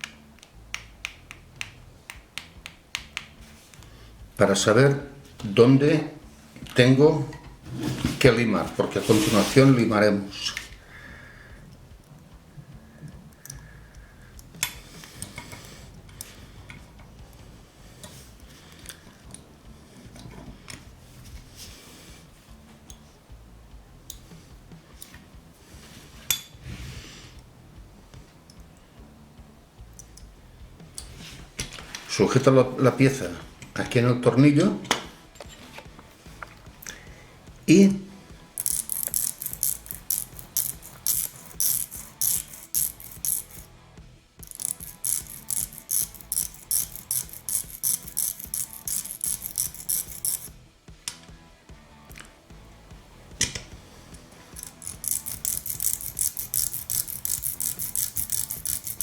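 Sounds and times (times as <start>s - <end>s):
scraping rustle: 7.6s - 10.0s
hand file rasping on copper: 38.6s - 43.7s, 44.4s - 50.5s, 54.6s - 59.0s
metallic clink: 38.6s - 43.7s, 44.4s - 50.5s, 54.6s - 59.0s.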